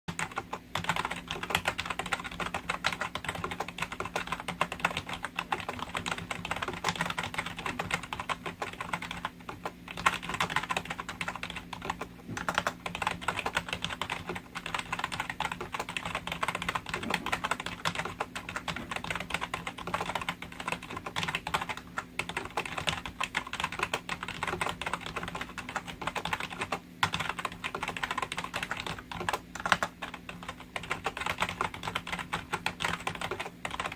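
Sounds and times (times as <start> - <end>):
keyboard typing: 0.1 - 33.9.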